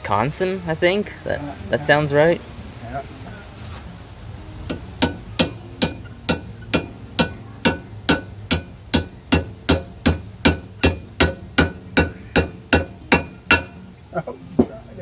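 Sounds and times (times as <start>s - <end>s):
hammer striking metal: 4.7s - 13.8s.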